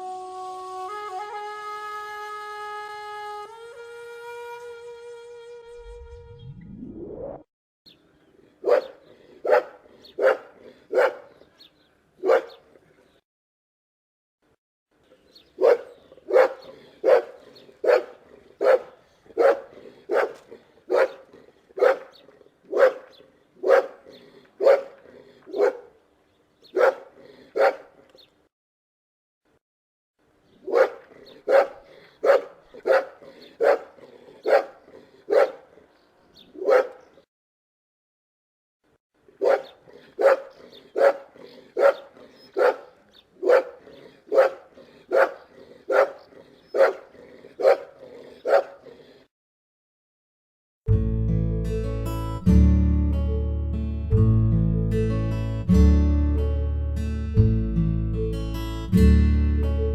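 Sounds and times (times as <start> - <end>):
dog barking: 8.6 - 11.4, 12.2 - 12.6, 15.6 - 25.9, 26.7 - 28.0, 30.6 - 35.7, 36.6 - 37.1, 39.4 - 49.2.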